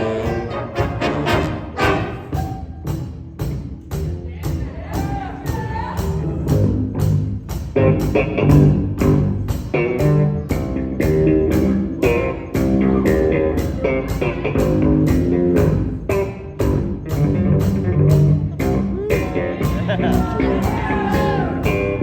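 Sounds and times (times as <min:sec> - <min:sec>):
saxophone ensemble playing jazz: 0:00.0 - 0:03.2
bass guitar: 0:00.0 - 0:22.0
steady ticking beat: 0:00.2 - 0:22.0.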